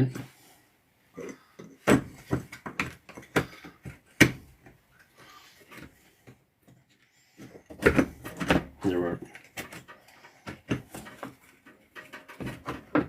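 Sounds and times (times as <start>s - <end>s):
small metal parts clicking and knocking: 7.8s - 13.0s.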